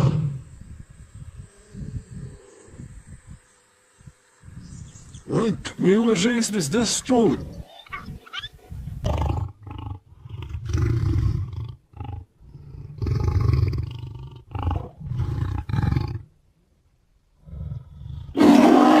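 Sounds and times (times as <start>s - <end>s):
lion roars: 0.0s - 0.5s, 7.4s - 16.3s, 17.4s - 19.0s.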